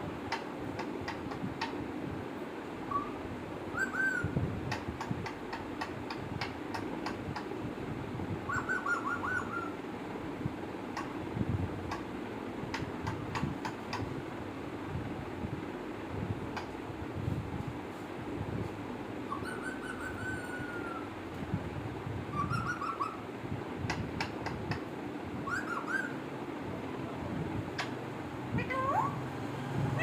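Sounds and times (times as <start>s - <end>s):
parrot whistling: 2.9s - 3.2s, 3.8s - 4.4s, 8.5s - 9.7s, 19.3s - 21.1s, 22.3s - 23.2s, 25.5s - 26.2s
sharp clicks: 12.7s - 14.1s.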